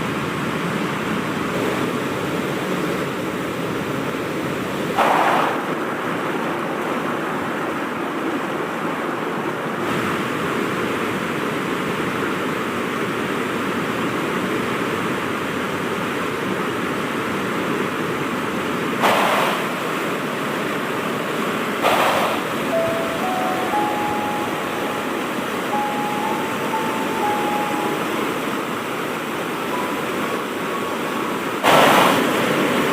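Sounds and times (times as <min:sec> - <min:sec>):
waterfall rushing: 0:14.9 - 0:32.9.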